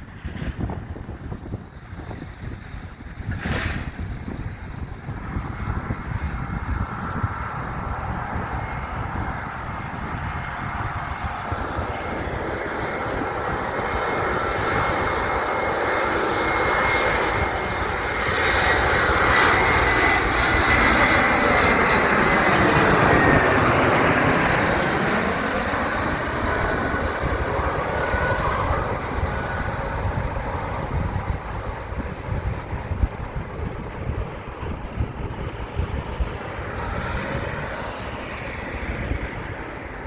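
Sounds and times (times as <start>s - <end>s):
jet airliner passing: 0.0s - 40.0s.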